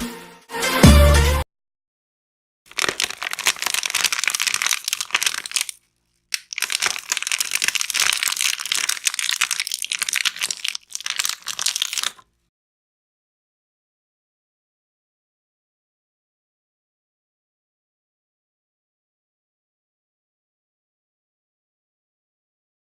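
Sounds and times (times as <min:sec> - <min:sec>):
plastic bottle crackling: 0:02.7 - 0:12.2.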